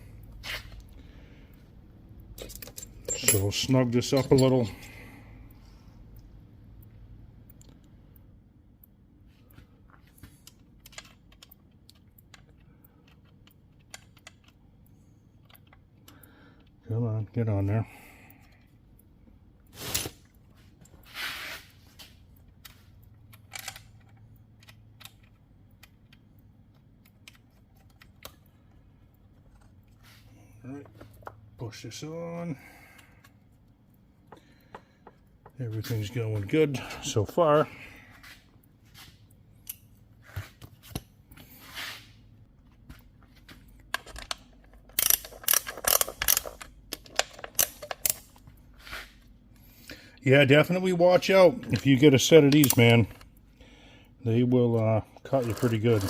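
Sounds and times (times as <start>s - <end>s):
chainsaw parts clicking and clunking: 2.4s - 4.7s, 43.9s - 48.4s
short scrape: 21.1s - 21.8s, 41.6s - 42.2s.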